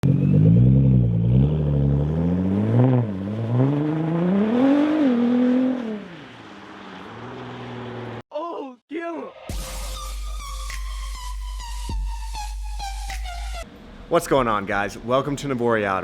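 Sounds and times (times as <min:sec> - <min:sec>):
car engine revving: 0:00.0 - 0:08.2.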